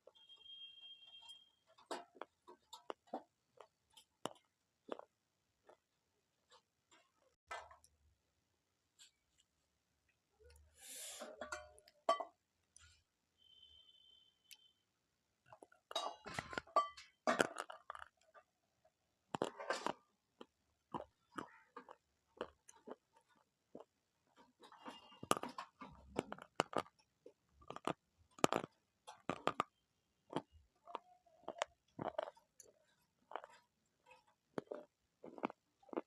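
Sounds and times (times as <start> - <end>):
chewing crunchy food: 2.0 - 5.9, 17.3 - 18.5, 19.3 - 29.7, 30.3 - 36.0.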